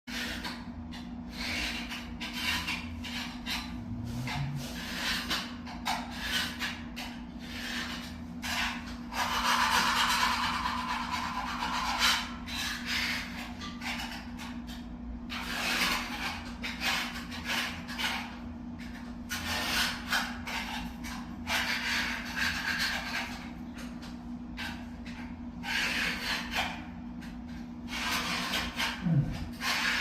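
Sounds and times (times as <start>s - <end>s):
grout scraping: 0.1s - 30.0s
steady low hum: 0.2s - 6.1s, 23.2s - 30.0s.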